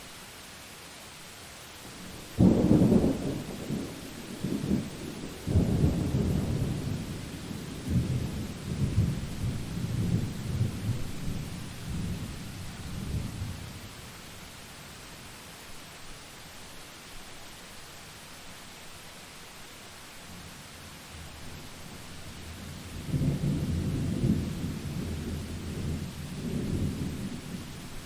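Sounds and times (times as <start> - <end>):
rain hissing: 0.0 - 28.0
thunder rumbling: 2.0 - 13.7, 22.7 - 27.8.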